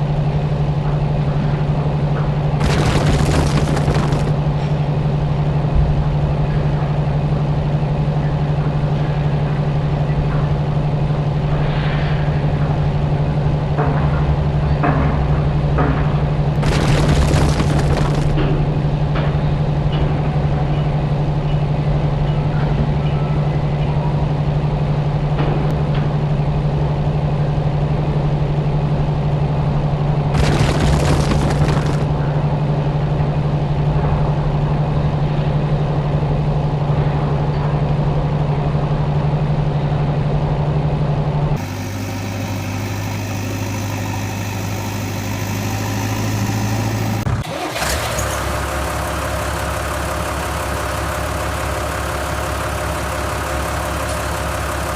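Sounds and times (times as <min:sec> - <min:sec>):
heavy machine engine humming: 0:00.0 - 0:25.5, 0:26.4 - 0:54.9
hiss: 0:41.6 - 0:47.2.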